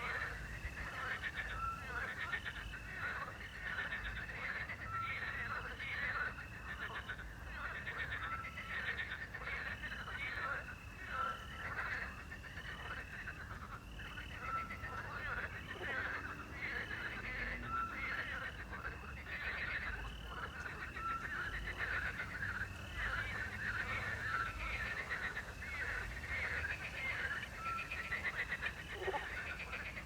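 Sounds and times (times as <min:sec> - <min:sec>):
frogs croaking: 0:00.0 - 0:30.0
crickets chirping: 0:06.0 - 0:30.0.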